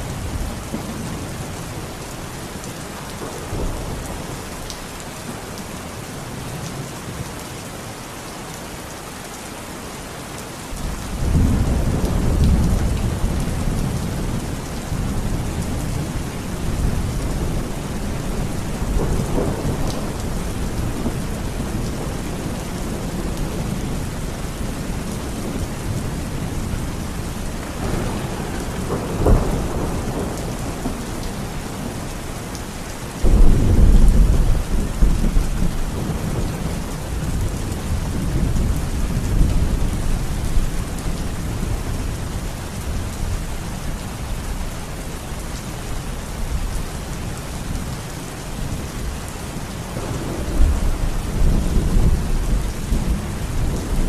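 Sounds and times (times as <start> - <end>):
steady rain falling: 0.0 - 54.0
thunder rumbling: 11.2 - 42.2, 49.9 - 54.0.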